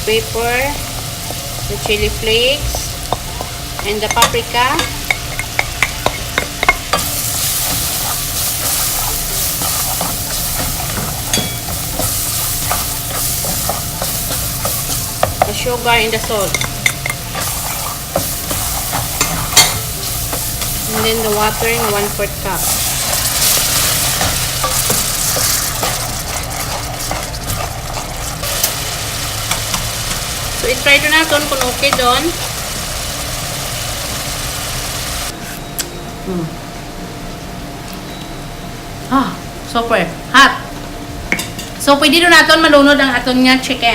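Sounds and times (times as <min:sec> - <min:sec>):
butter and spices sizzling: 0:00.0 - 0:35.4
utensil stirring against pan: 0:00.6 - 0:33.3
spoon clinking against pan: 0:09.6 - 0:15.5.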